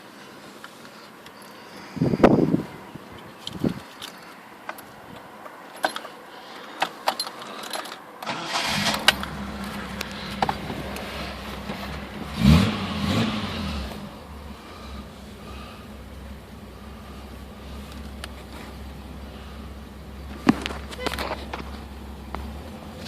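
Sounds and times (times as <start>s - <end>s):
engine revving: 8.2s - 15.8s
car engine starting and idling: 8.2s - 23.0s.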